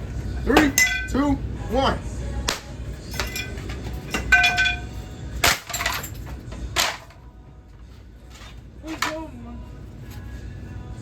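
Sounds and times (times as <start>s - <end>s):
glass shards clinking: 0.6s - 1.2s, 3.0s - 7.2s
glass smashing: 2.5s - 7.1s.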